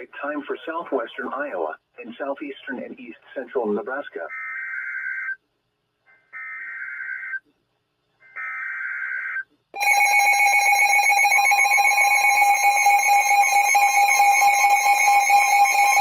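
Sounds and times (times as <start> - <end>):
harsh steady alert tone: 8.2 - 16.0.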